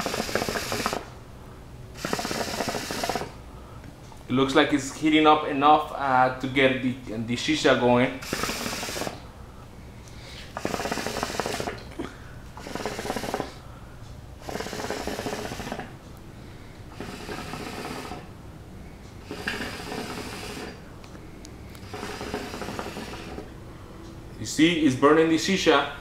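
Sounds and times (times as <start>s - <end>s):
hookah water bubbling: 0.0s - 1.1s, 2.0s - 3.4s, 8.2s - 9.2s, 10.5s - 13.6s, 14.4s - 15.9s, 16.9s - 18.3s, 19.2s - 20.9s, 21.8s - 23.5s.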